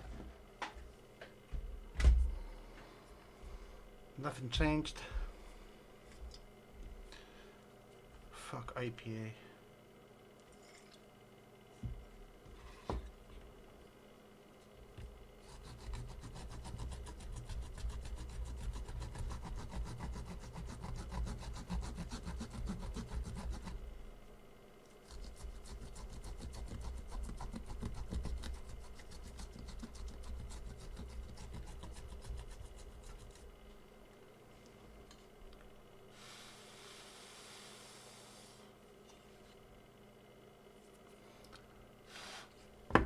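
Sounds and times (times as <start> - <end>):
scrubbing on circuit board: 15.4 - 23.8, 25.0 - 33.5.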